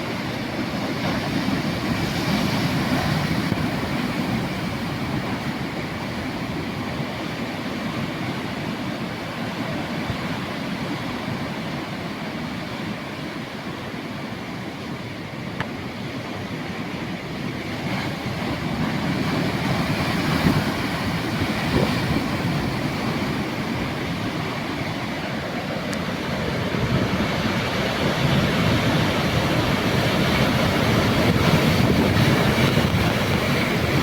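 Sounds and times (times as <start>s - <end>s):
sea waves rushing on shore: 0.0s - 34.0s.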